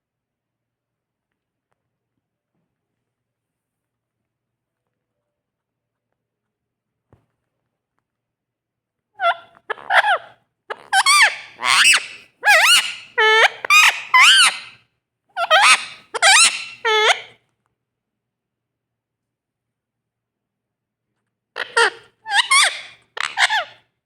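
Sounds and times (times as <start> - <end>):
parrot chattering calls: 9.2 - 14.8, 15.4 - 17.3, 21.6 - 23.8.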